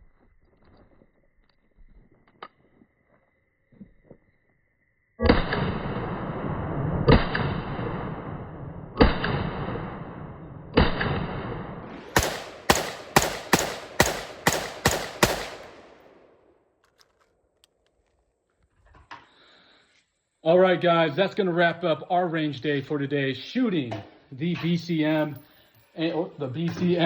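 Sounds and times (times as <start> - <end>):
gunshot echo: 5.2 - 16.5
rifle gunshots: 5.2 - 16.5.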